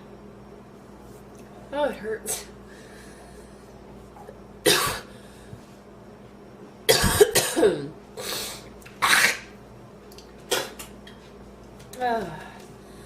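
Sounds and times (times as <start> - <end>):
woman coughing: 4.6 - 5.1, 6.9 - 8.0.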